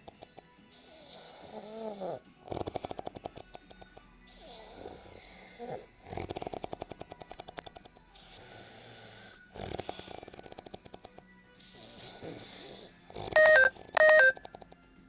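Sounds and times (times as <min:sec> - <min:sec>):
man snoring: 0:00.8 - 0:03.2, 0:04.4 - 0:06.8, 0:08.2 - 0:10.7, 0:11.7 - 0:13.7.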